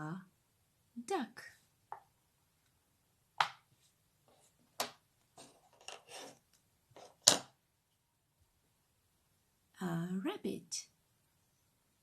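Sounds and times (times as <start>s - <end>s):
soft rubbing and clicks: 5.2s - 7.2s.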